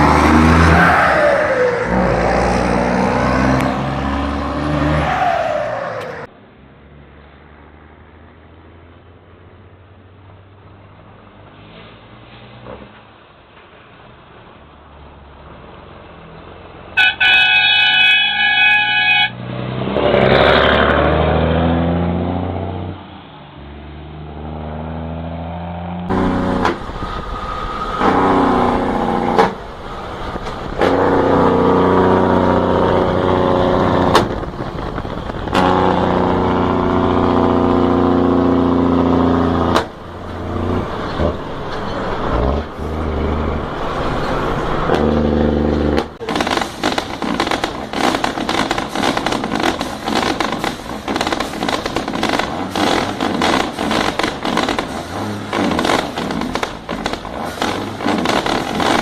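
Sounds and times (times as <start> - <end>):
diesel truck engine rumbling: 0.0 - 19.1, 20.1 - 59.0
truck air horn: 17.0 - 19.4, 27.8 - 29.4, 30.8 - 33.9, 35.5 - 36.8.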